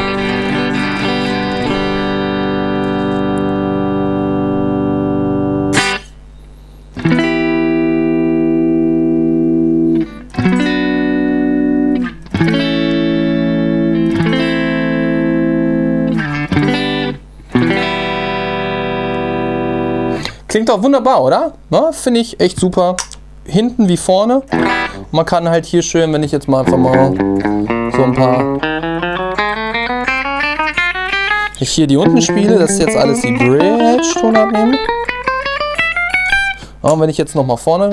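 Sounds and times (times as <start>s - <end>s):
electric guitar chords ringing: 0.0s - 6.2s, 7.0s - 20.4s, 24.5s - 25.1s, 26.6s - 36.8s.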